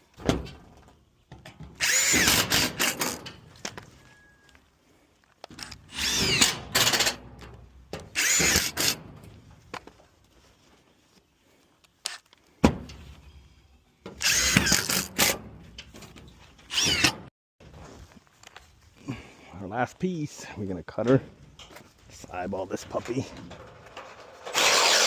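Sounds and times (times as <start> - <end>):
power drill driving screws: 1.8 - 3.3, 5.6 - 7.2, 8.1 - 9.0, 14.2 - 15.4, 16.7 - 17.2, 24.4 - 25.0.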